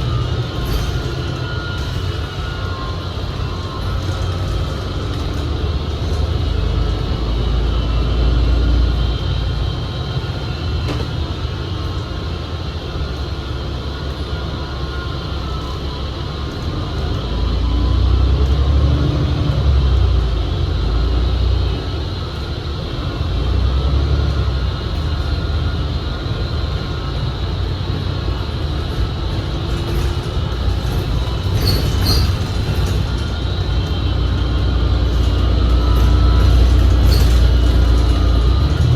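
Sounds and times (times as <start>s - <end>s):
bus engine rumble: 0.0s - 38.9s
high-pitched transmission whine: 0.0s - 38.9s.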